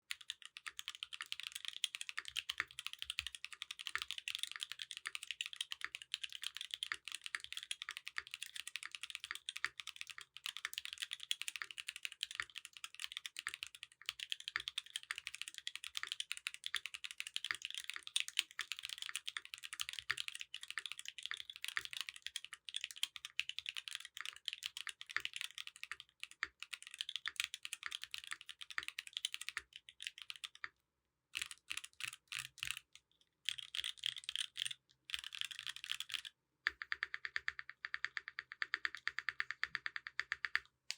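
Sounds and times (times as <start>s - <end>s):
fast mechanical keyboard typing: 0.1s - 30.7s, 31.4s - 32.8s, 33.5s - 40.6s.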